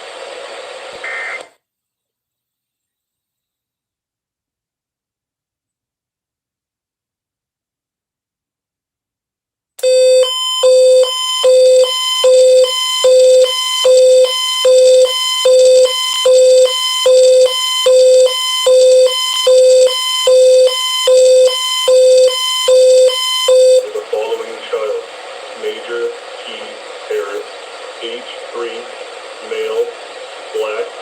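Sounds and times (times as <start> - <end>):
buzzy alert beeps: 9.8 - 23.8.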